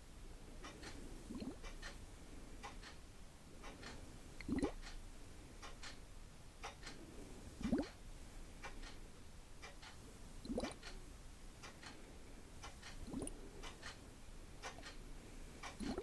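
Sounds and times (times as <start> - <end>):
clock tick-tock: 0.6 - 5.0, 5.6 - 7.0, 7.6 - 9.0, 9.6 - 12.0, 12.6 - 15.0, 15.6 - 16.0.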